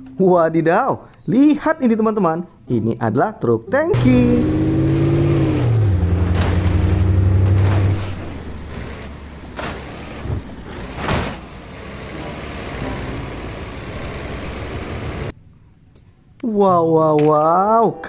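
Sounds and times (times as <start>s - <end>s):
low engine-like hum: 4.0s - 15.3s
short knocks: 4.7s - 11.6s.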